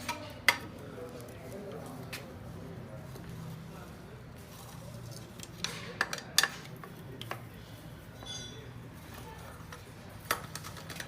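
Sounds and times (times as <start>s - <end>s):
short metallic ring: 8.2s - 8.6s
metal tools clinking: 8.2s - 8.7s.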